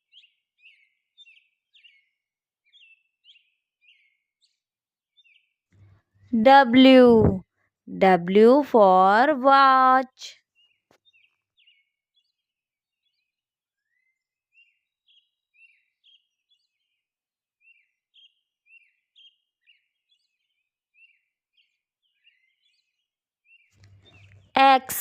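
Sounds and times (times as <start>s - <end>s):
faint birdsong chirping: 0.1s - 4.5s, 13.0s - 17.0s, 17.6s - 24.6s.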